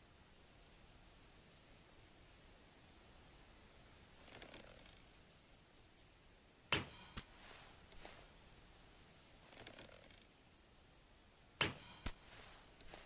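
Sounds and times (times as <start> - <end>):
arrow knock: 6.7 - 7.4, 11.6 - 12.6.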